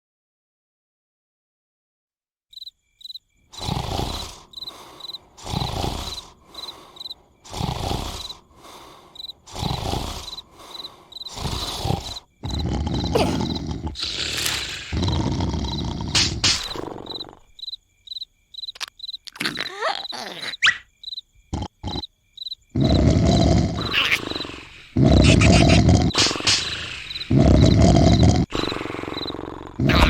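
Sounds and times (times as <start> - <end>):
crickets chirping: 2.5 - 30.0
cartoon snoring: 3.5 - 17.6, 19.3 - 20.8, 21.5 - 22.1, 22.7 - 30.0.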